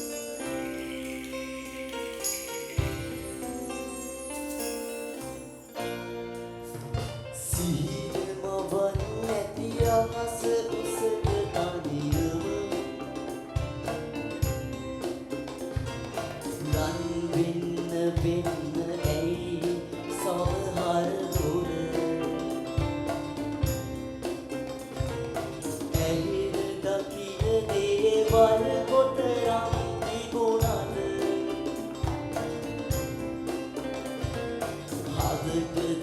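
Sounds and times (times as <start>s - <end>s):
regular drum beat: 0.0s - 36.0s.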